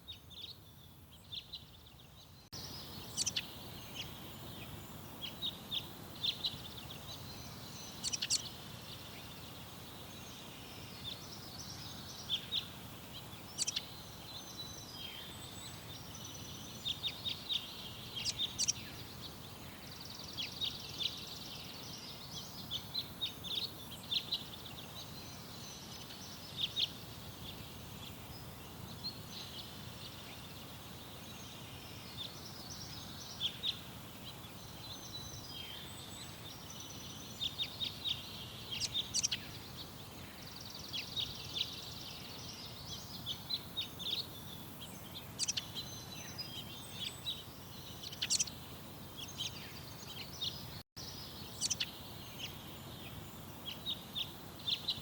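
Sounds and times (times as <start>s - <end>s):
songbirds chirping and singing: 0.0s - 55.0s.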